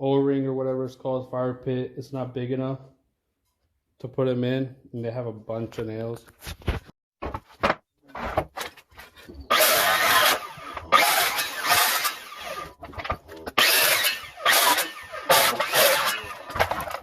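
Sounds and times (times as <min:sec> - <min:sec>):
power saw cutting wood: 0:09.5 - 0:17.0.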